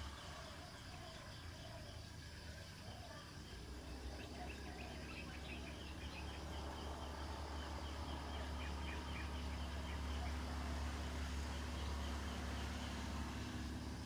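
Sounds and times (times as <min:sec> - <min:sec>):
low rumble of distant traffic: 0:04.7 - 0:14.0.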